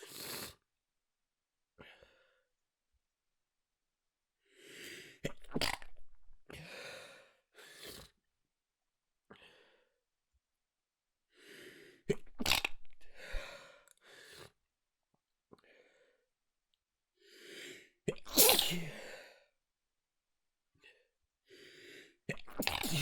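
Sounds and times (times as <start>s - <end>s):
person inhaling: 4.4s - 5.2s, 13.1s - 14.6s
person stifling sneezes: 18.1s - 19.1s, 22.5s - 23.0s.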